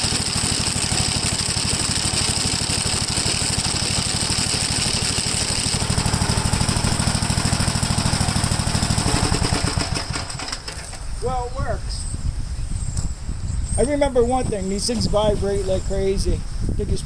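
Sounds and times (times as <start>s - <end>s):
mower chattering pulse: 0.0s - 12.1s
tractor engine running: 0.0s - 12.2s.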